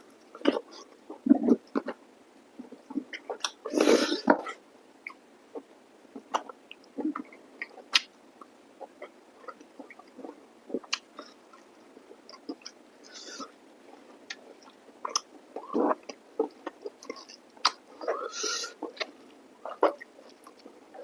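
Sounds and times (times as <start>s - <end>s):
wet chewing and lip-smacking: 9.4s - 11.7s, 14.3s - 21.0s.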